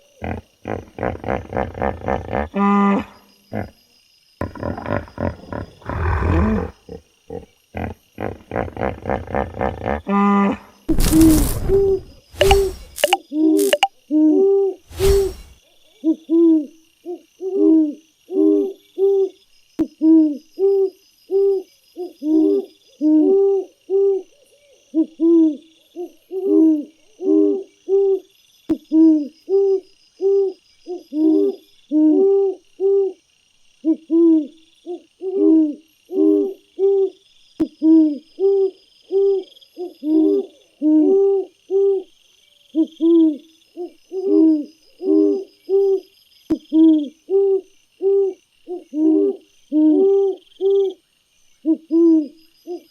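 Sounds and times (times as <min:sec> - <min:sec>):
high-pitched insect chorus: 0:00.0 - 0:52.9
bird hooting: 0:04.4 - 0:12.7.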